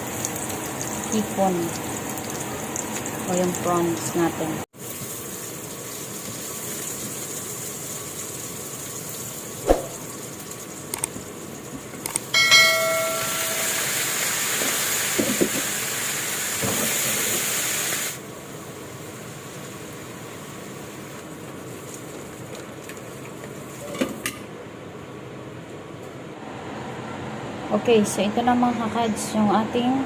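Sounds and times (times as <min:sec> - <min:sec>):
prawns sizzling in hot oil: 0:00.0 - 0:12.0, 0:12.7 - 0:23.8
pan knock: 0:12.4 - 0:14.1.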